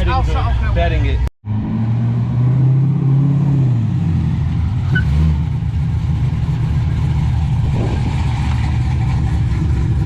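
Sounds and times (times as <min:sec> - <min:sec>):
car engine running: 0:03.9 - 0:10.0.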